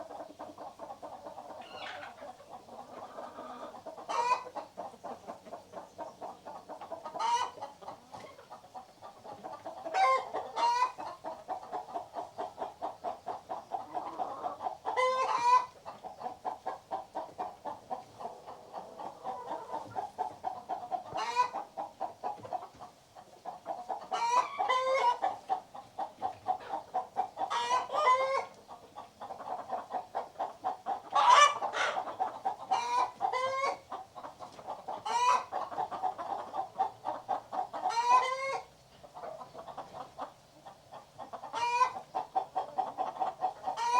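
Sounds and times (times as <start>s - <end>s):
hens clucking: 0.0s - 43.9s
hens squawking cackles: 0.0s - 43.9s.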